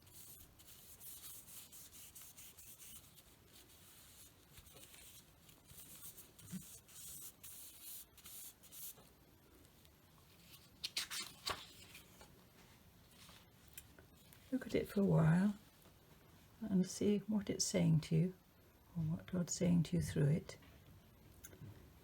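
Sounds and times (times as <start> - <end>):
plastic sheets rustling: 10.2 - 14.6.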